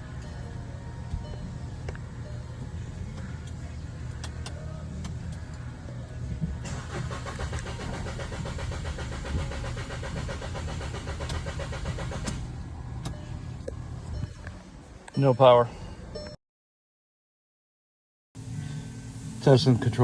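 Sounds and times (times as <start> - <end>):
steady low hum: 0.0 - 16.4, 18.4 - 20.0
car engine cranking: 6.6 - 15.1.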